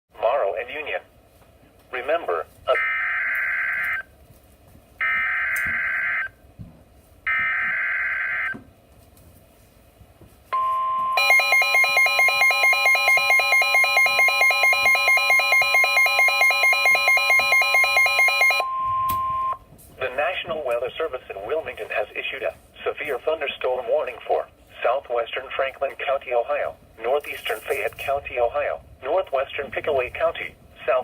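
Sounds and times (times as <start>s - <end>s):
steady warning alarm tone: 2.7s - 4.1s, 5.0s - 6.4s, 7.3s - 8.6s, 10.6s - 19.7s
shrill pulsing alarm beep: 5.0s - 6.4s, 7.3s - 8.6s, 10.6s - 19.6s
buzzing data tones: 10.6s - 19.6s.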